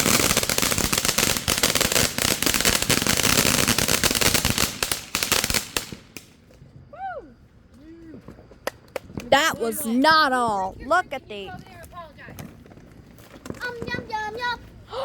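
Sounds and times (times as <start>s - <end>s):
fireworks crackling: 0.0s - 6.4s, 9.1s - 11.7s.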